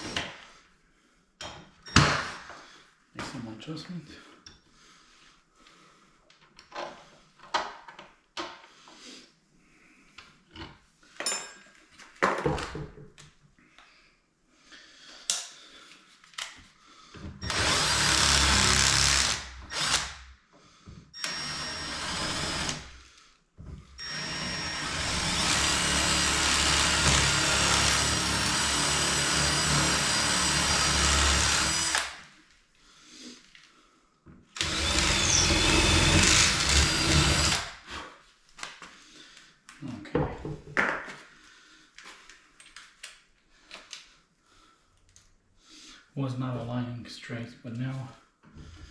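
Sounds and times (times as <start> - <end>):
power drill running: 17.4 - 20.2, 21.2 - 23.0, 24.0 - 32.2, 34.6 - 37.8.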